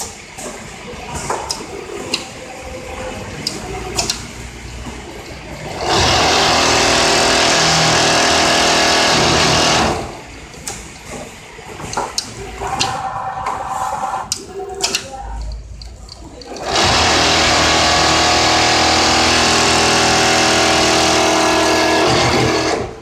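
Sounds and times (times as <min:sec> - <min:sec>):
sewing machine running: 0:03.2 - 0:10.5, 0:16.5 - 0:23.0.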